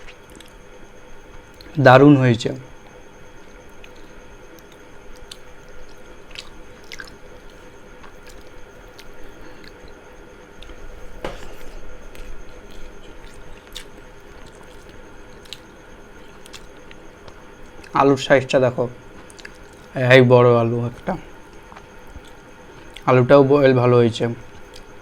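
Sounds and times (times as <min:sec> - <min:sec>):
person chewing food: 0:00.0 - 0:00.6, 0:03.7 - 0:10.0, 0:10.6 - 0:18.0, 0:19.1 - 0:19.9, 0:21.4 - 0:23.1, 0:24.5 - 0:25.0.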